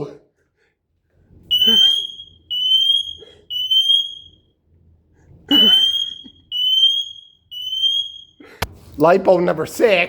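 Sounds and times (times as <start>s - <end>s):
smoke detector beeping: 1.5s - 4.4s, 5.5s - 8.4s.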